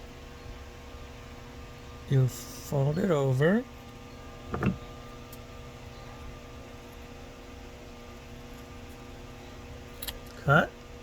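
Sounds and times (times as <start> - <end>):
electrical hum with tones: 0.0 - 11.0.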